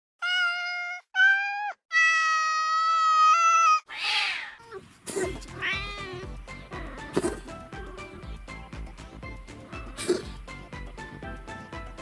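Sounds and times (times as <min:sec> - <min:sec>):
cat meowing: 0:00.2 - 0:08.2
breathy puff: 0:04.9 - 0:05.6, 0:06.9 - 0:08.2, 0:09.7 - 0:10.6.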